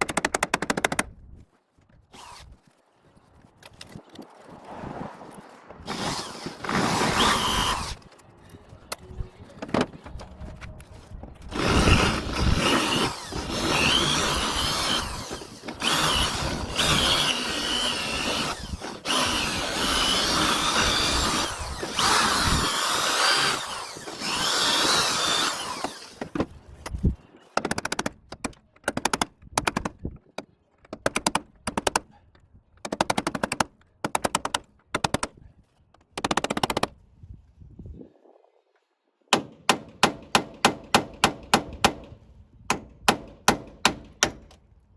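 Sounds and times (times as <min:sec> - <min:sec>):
power drill whining under load: 0:05.9 - 0:08.1, 0:11.5 - 0:26.4.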